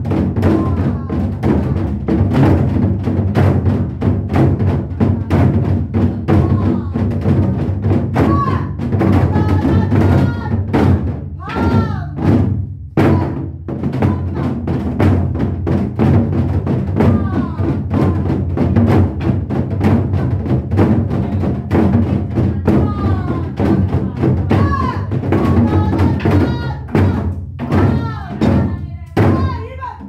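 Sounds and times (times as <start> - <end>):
barrel drums beaten fast: 0.0 - 30.0
person singing: 22.4 - 30.0.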